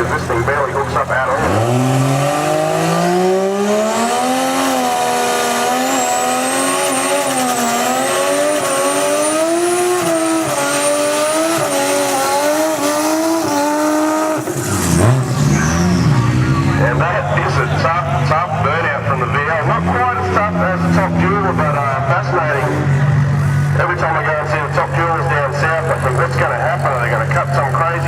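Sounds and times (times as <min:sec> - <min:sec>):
car engine revving at full throttle: 0:00.0 - 0:28.0.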